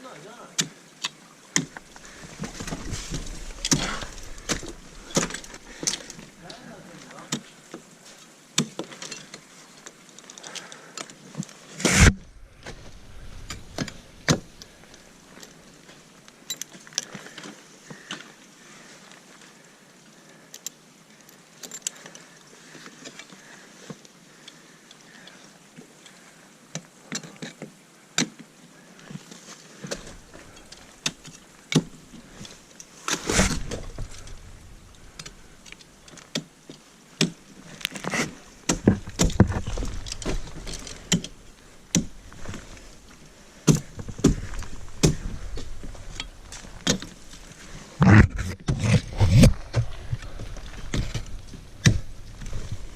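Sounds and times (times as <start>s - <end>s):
climbing hardware clinking: 37.2s - 47.5s.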